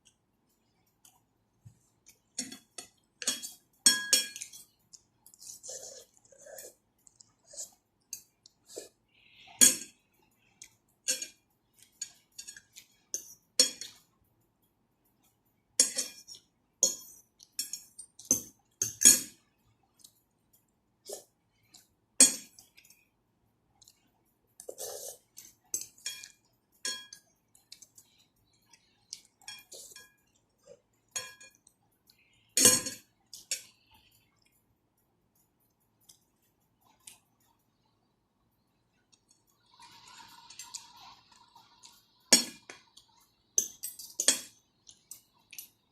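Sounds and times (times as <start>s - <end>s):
cutlery clinking on a bowl: 2.1s - 14.1s, 15.8s - 19.4s, 21.1s - 23.0s, 24.6s - 28.1s, 28.7s - 31.8s, 32.5s - 33.8s, 39.2s - 45.8s.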